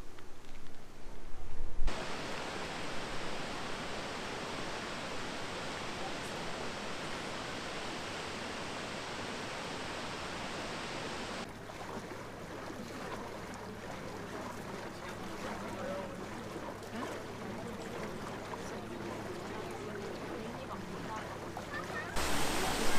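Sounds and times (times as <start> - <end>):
waterfall rushing: 1.9 - 11.4, 22.2 - 22.9.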